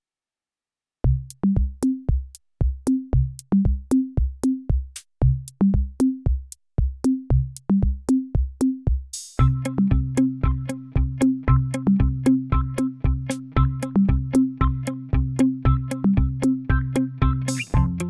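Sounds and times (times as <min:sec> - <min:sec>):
pitched bass drum hits: 0:09.4 - 0:16.8, 0:17.5 - 0:18.0.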